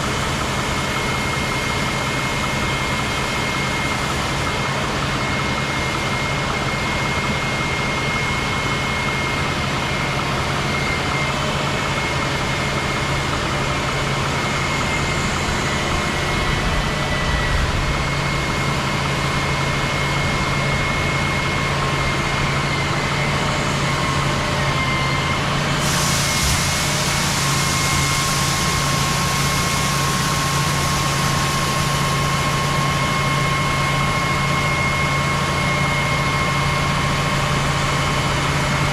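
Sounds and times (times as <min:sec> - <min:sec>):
diesel engine hum: 0:00.0 - 0:38.9
bright hiss: 0:25.8 - 0:31.8.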